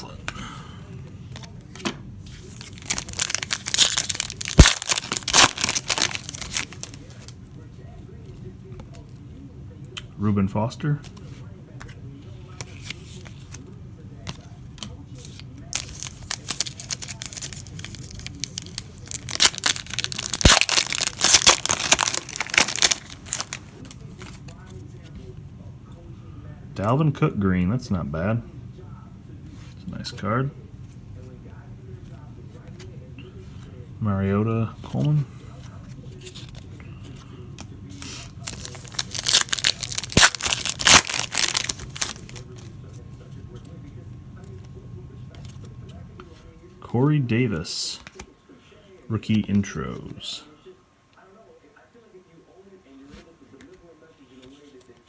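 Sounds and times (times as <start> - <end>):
foil wrapper tearing and crinkling: 2.5 - 7.3, 15.7 - 23.8, 38.0 - 42.7.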